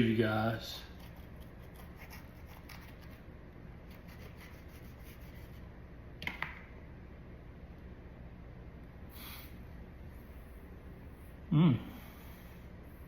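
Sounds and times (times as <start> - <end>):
knife cutting chili pepper: 0.9 - 3.2.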